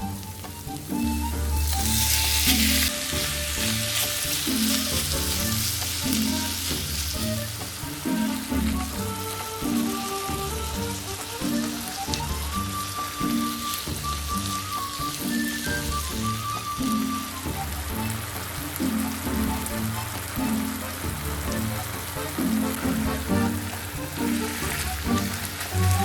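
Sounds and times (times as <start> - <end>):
background music: 0.0 - 26.0
food sizzling in a hot pan: 0.0 - 26.0.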